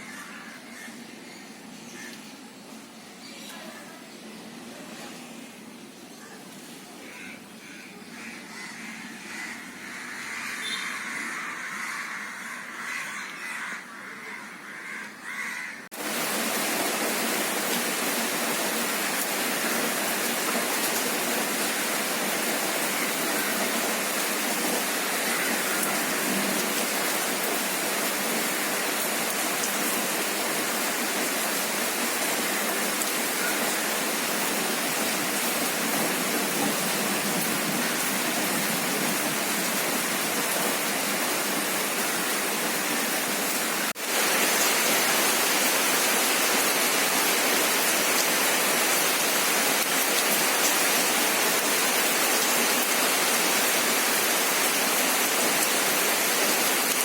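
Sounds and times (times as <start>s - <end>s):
crows cawing: 0.0s - 2.3s, 7.0s - 15.9s, 25.0s - 26.3s, 32.4s - 34.1s
heavy rain hissing: 0.0s - 7.7s, 15.9s - 57.0s.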